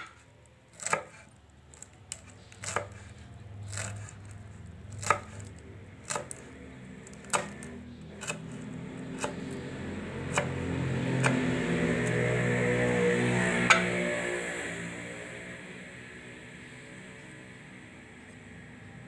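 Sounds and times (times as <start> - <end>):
knife chopping on wooden board: 0.0 - 9.6, 10.3 - 12.2, 13.6 - 14.0.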